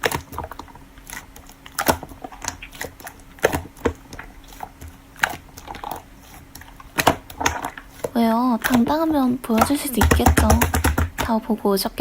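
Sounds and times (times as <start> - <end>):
faint steady hum: 0.0 - 12.0.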